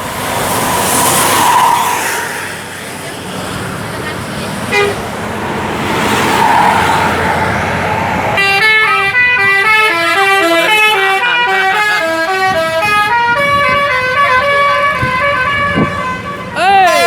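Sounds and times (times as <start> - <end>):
loud rushing noise: 0.0 - 15.0
bus musical horn melody: 4.7 - 5.0, 8.4 - 17.0.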